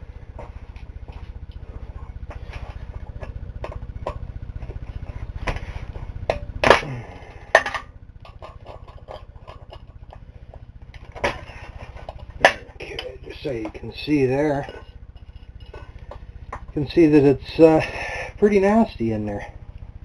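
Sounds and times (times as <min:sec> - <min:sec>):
steady low rumble: 0:00.0 - 0:20.0
metal clanks of engine parts: 0:05.0 - 0:16.8.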